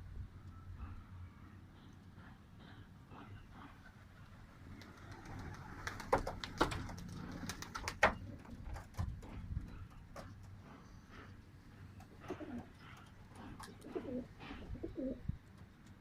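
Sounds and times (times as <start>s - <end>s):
pigeons cooing: 3.2s - 15.4s.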